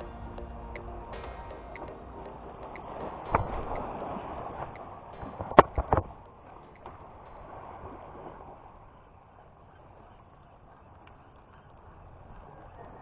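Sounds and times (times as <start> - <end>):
sharp knocks: 0.4 - 7.6.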